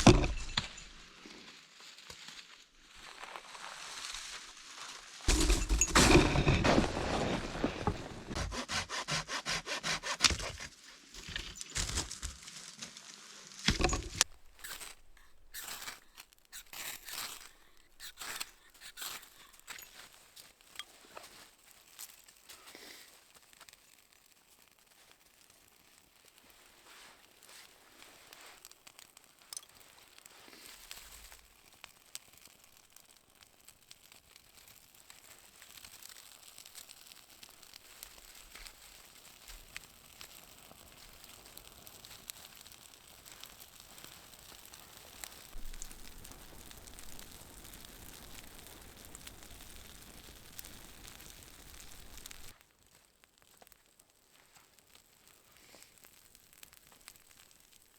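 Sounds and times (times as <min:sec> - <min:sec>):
campfire crackling and hissing: 0:00.0 - 0:57.9.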